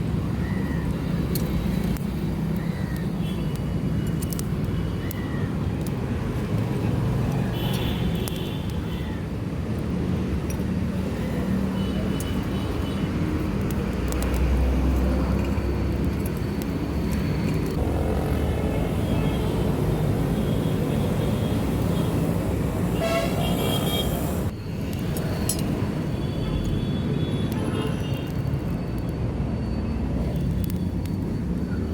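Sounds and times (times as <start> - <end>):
road traffic passing: 0.0 - 31.9
car horn toots: 23.0 - 24.4.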